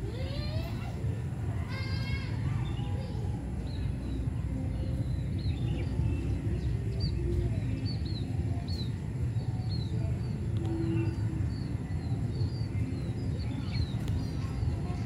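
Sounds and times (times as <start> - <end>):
road traffic rumble: 0.0 - 15.0
small birds chirping: 1.7 - 15.0.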